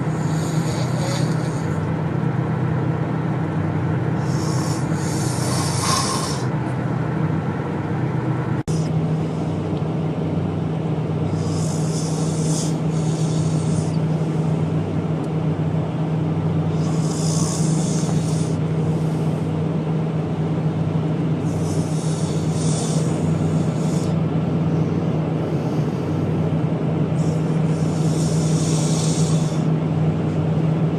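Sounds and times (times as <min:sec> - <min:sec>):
man snoring: 0:00.0 - 0:02.0, 0:04.2 - 0:06.6, 0:11.3 - 0:14.7, 0:16.7 - 0:19.5, 0:21.4 - 0:24.2, 0:27.2 - 0:29.7
steady low hum: 0:00.0 - 0:30.9.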